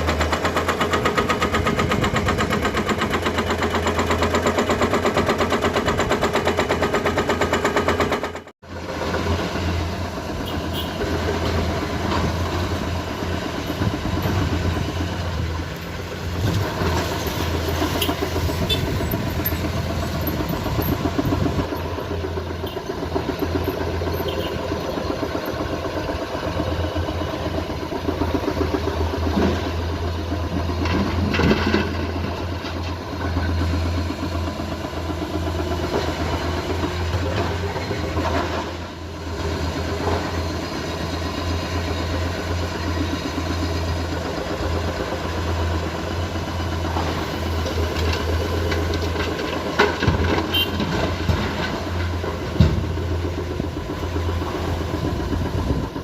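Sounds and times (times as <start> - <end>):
sharp knocks and clatter: 0.0 - 8.5
excavator diesel engine running: 0.0 - 56.0.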